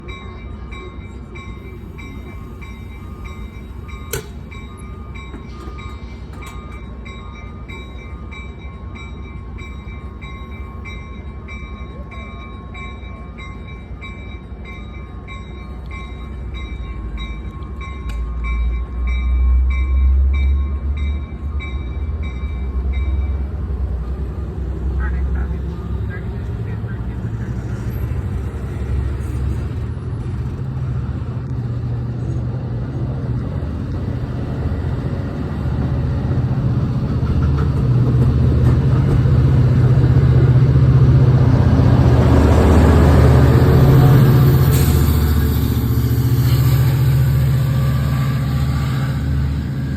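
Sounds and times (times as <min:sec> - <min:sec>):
diesel train rumble: 0:00.0 - 0:49.9
sharp click: 0:04.1 - 0:04.4.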